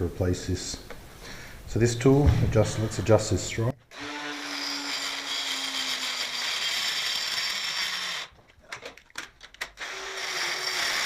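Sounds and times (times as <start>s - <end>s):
power tool cutting metal: 3.9s - 8.3s, 9.8s - 11.0s.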